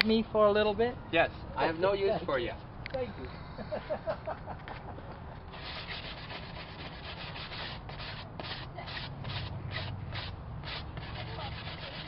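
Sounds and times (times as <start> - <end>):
rubbing strokes on pond liner: 5.5 - 12.0.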